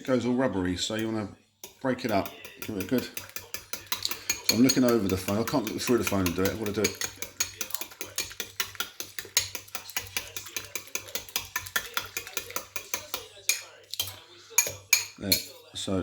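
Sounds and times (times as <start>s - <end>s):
fork clicking against a bowl: 1.6s - 15.6s.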